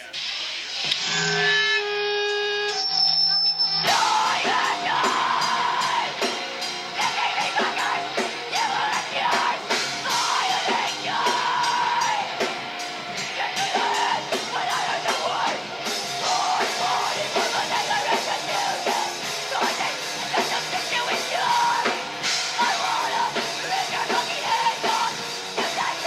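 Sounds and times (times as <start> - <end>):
loud electric guitar: 0.0 - 26.0
drum kit fast beat: 3.9 - 26.0.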